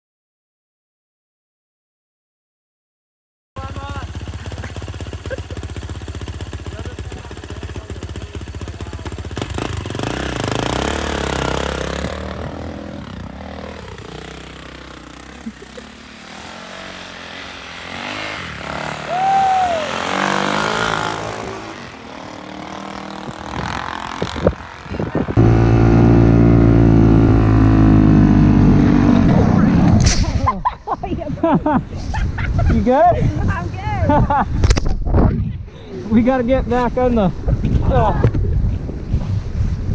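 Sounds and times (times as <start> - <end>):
dirt bike engines revving: 3.6 - 30.4.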